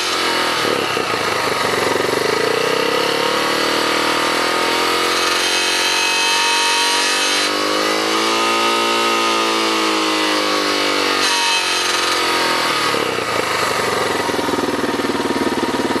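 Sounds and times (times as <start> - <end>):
engine rattle: 0.0 - 6.5, 11.5 - 16.0
motorcycle engine high revs: 0.0 - 16.0.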